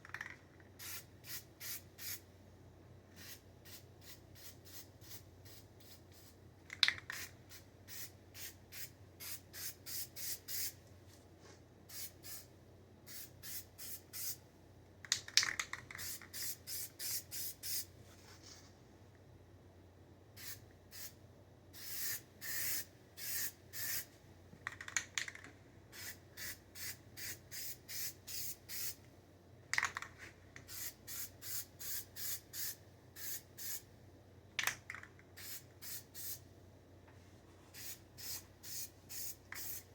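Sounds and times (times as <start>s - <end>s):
spray paint hissing in bursts: 0.8s - 2.2s, 3.2s - 6.4s, 7.1s - 10.8s, 11.9s - 12.5s, 13.1s - 14.4s, 15.9s - 17.9s, 20.4s - 21.2s, 21.8s - 24.1s, 25.9s - 29.0s, 30.6s - 33.8s, 35.4s - 36.4s, 37.7s - 39.9s.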